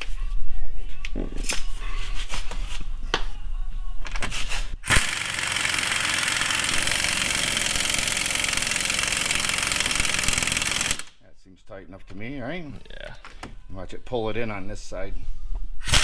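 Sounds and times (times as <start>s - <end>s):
impact wrench hammering: 4.9s - 11.1s.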